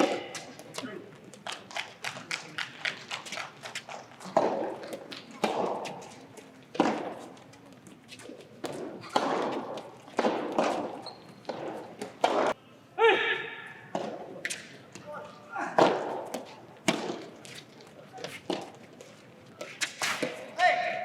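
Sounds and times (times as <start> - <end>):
voices echoing in a hall: 0.0 - 7.7, 12.3 - 18.8, 19.5 - 21.0
balls knocking off rackets: 0.0 - 12.6, 13.9 - 20.5.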